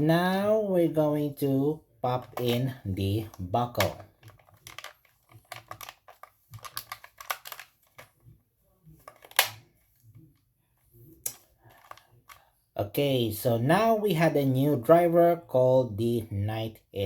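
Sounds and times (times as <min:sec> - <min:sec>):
plastic toy clicks and rattles: 0:02.2 - 0:08.1
plastic snap clipping into place: 0:09.1 - 0:09.6.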